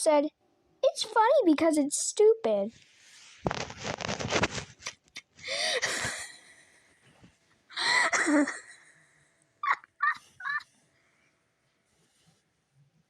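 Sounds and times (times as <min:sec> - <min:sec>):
person wheezing: 0:05.4 - 0:06.4, 0:07.8 - 0:08.9.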